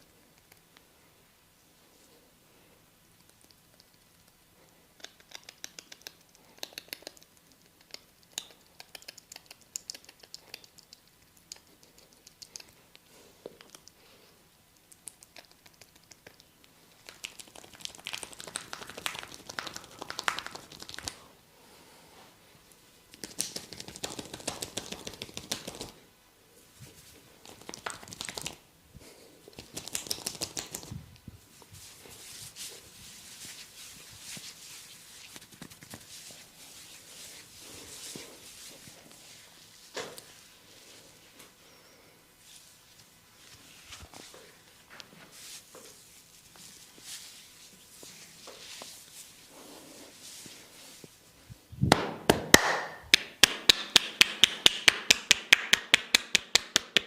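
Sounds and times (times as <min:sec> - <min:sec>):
fingers scratching through hair: 0:05.0 - 0:14.0, 0:14.8 - 0:21.2, 0:23.1 - 0:26.0, 0:26.8 - 0:28.6, 0:29.5 - 0:41.0.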